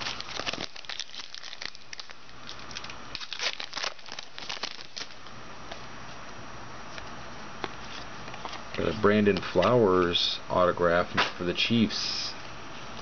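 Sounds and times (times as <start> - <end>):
wrapper crinkling and tearing: 0.0 - 5.3.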